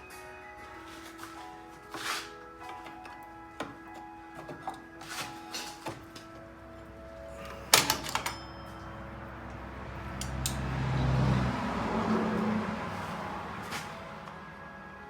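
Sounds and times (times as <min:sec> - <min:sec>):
metallic clicks and clanks: 0:07.7 - 0:08.9.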